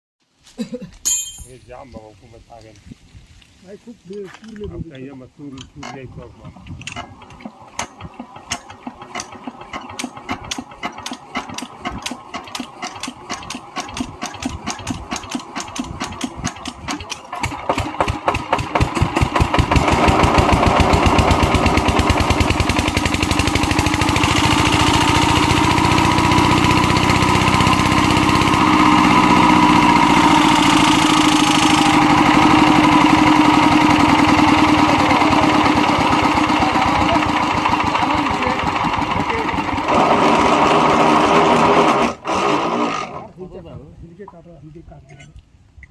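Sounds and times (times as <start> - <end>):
engine whine: 5.6 - 43.4
diesel engine running: 7.1 - 43.2.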